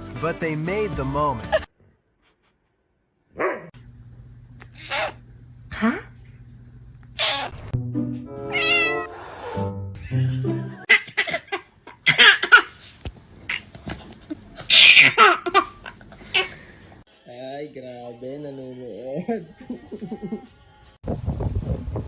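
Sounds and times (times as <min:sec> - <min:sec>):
background music: 0:00.0 - 0:01.7, 0:07.8 - 0:10.9
cat meowing: 0:07.2 - 0:07.6, 0:08.5 - 0:09.1.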